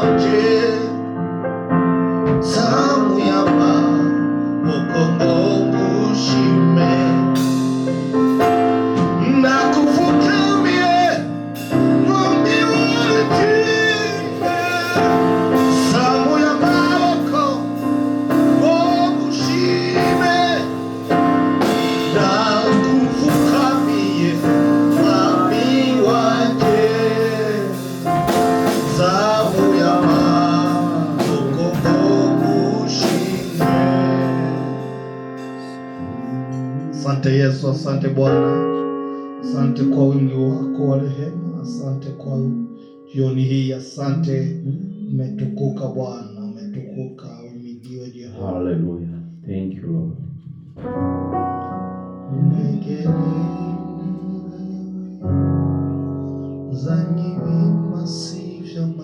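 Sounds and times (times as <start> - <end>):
gospel singers: 0.0 - 1.2, 2.3 - 49.6, 52.2 - 59.0
keyboard sustained chords: 3.0 - 47.0.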